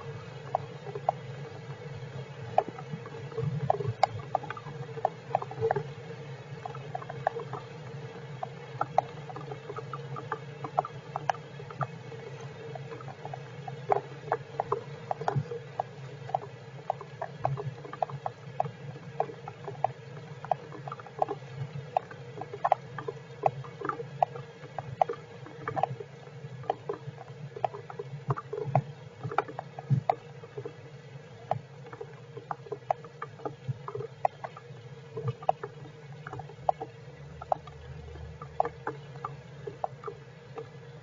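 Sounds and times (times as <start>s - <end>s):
low electrical hum: 0.0s - 41.0s
rain drops ticking: 0.0s - 41.0s.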